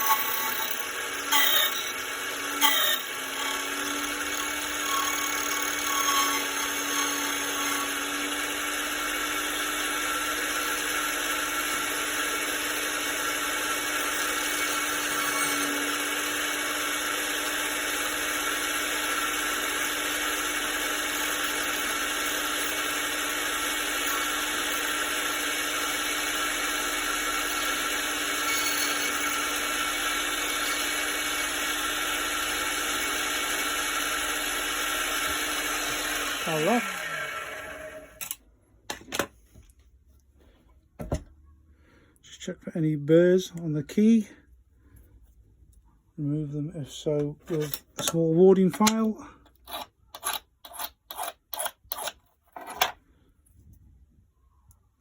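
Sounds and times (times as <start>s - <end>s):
key cutting machine whirring: 0.0s - 38.4s.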